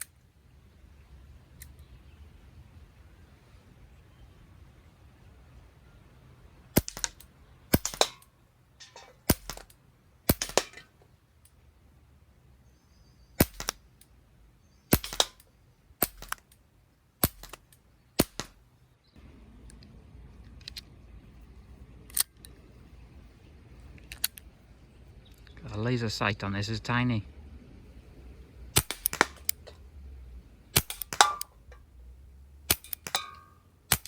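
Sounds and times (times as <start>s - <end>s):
air pistol shots: 6.8s - 9.7s, 10.3s - 10.9s, 13.4s - 13.8s, 14.9s - 16.4s, 18.2s - 18.6s, 28.7s - 29.7s, 30.7s - 31.8s, 32.7s - 34.0s.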